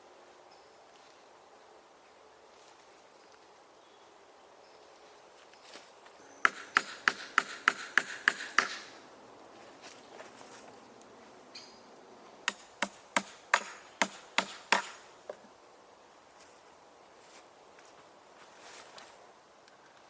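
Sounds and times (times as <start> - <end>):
hammer blows: 6.4 - 9.0, 12.5 - 15.0.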